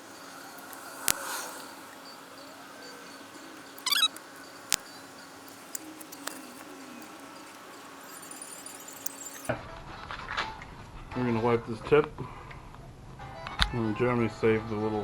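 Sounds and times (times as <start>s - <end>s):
high wavering squeak: 0.0s - 9.5s
small ticks: 0.0s - 9.5s.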